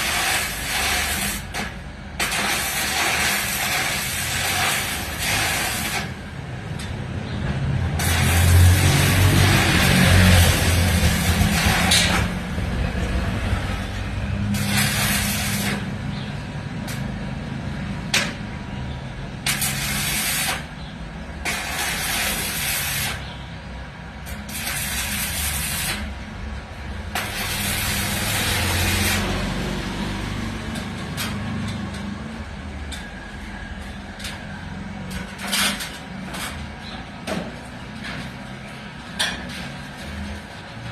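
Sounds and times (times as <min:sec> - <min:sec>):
arc welding crackling hiss: 0:00.0 - 0:06.3, 0:07.8 - 0:16.0, 0:19.4 - 0:20.8, 0:21.4 - 0:23.3, 0:24.2 - 0:26.2, 0:26.9 - 0:29.8.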